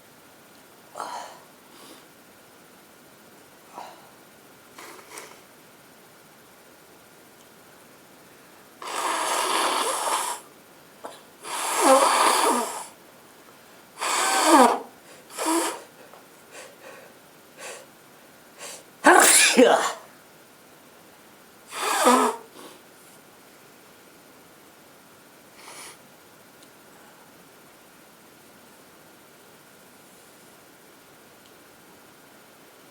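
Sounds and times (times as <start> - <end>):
sniffing: 4.8 - 5.4, 8.8 - 10.5, 11.1 - 13.0, 14.0 - 17.9, 21.7 - 22.8
woman blowing her nose: 8.8 - 10.5, 11.4 - 13.0, 14.0 - 16.0, 18.6 - 20.0, 21.7 - 22.8, 25.6 - 26.0
woman sneezing: 18.6 - 20.1, 21.8 - 22.5.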